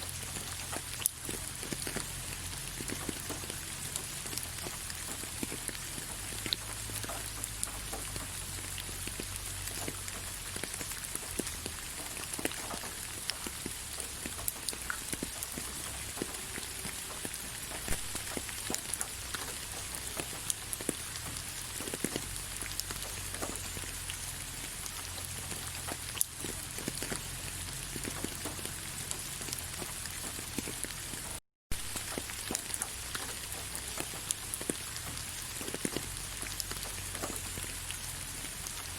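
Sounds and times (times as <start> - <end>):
rain falling on leaves: 0.0 - 38.9.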